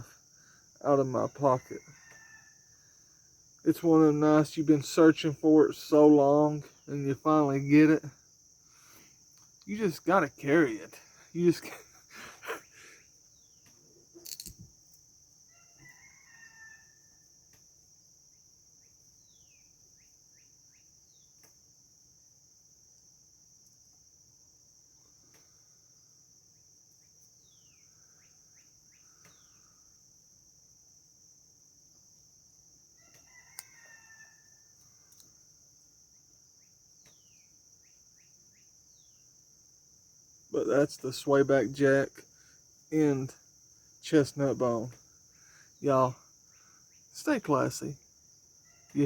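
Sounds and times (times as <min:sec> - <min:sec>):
crickets trilling: 0:00.0 - 0:49.0
insects droning: 0:00.0 - 0:49.0
sharp click: 0:14.2 - 0:14.6
distant rooster crowing: 0:15.5 - 0:17.3, 0:33.0 - 0:35.1, 0:48.6 - 0:49.0.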